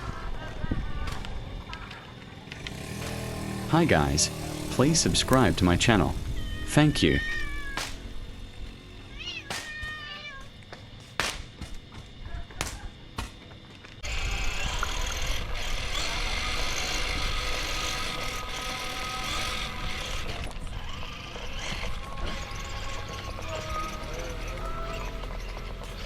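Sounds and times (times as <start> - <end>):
cat meowing: 6.3 - 7.8, 9.0 - 10.5.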